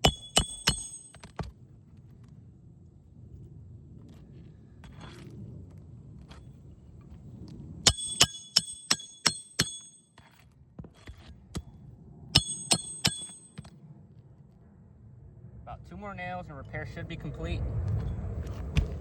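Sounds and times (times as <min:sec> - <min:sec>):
hatchet striking roofing nails: 0:00.0 - 0:01.5, 0:07.9 - 0:11.3, 0:12.4 - 0:13.7.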